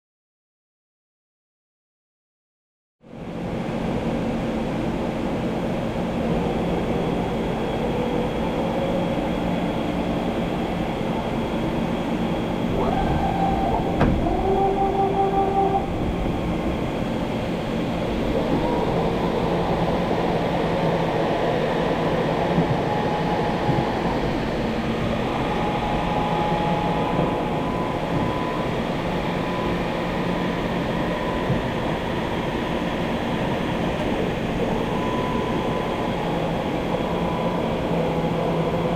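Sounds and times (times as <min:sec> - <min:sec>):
machinery rumble and hum: 0:03.1 - 0:38.9
brief whining tones: 0:12.6 - 0:17.0.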